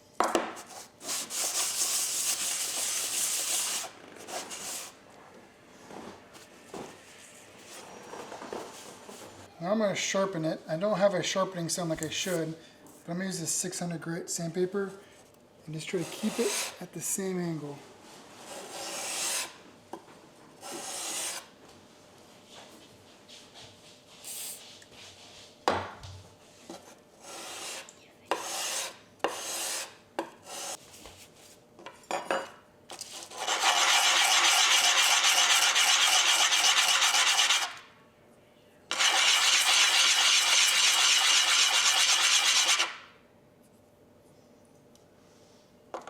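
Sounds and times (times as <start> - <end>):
blade scraping on sandpaper: 16.0 - 16.8, 33.0 - 37.8, 38.9 - 43.0.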